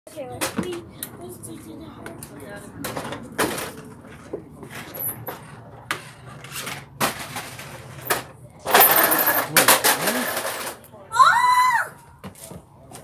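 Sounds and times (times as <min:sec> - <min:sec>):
toy cars clattering: 0:02.0 - 0:11.0.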